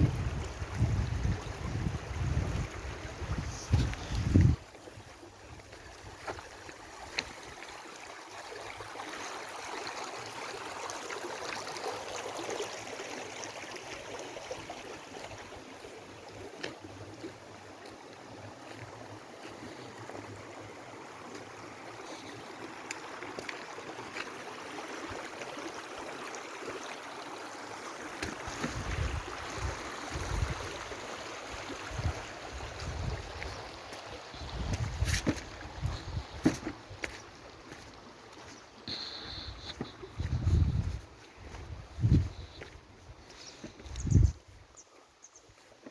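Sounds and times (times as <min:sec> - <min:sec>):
wind buffeting microphone: 0:00.0 - 0:04.6, 0:28.5 - 0:30.8, 0:31.8 - 0:33.6, 0:34.4 - 0:36.6, 0:40.1 - 0:43.2, 0:43.8 - 0:44.5
water rushing in stream: 0:00.0 - 0:45.9.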